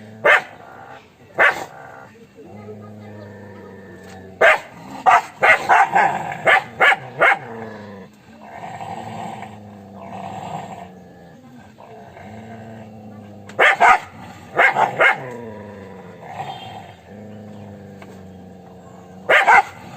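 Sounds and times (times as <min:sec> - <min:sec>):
dog growling: 0:00.0 - 0:19.9
dog barking: 0:00.2 - 0:00.6, 0:01.4 - 0:01.9, 0:04.4 - 0:07.6, 0:13.6 - 0:15.4, 0:19.2 - 0:19.8.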